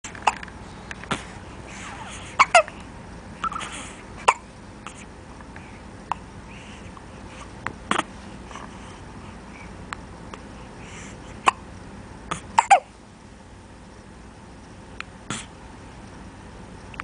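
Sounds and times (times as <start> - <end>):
baby hiccuping: 3.4 - 4.4, 12.3 - 12.9.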